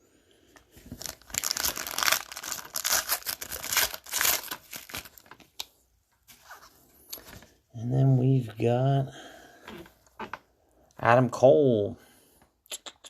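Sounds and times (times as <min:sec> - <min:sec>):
plastic packaging crinkling: 0:00.8 - 0:05.6.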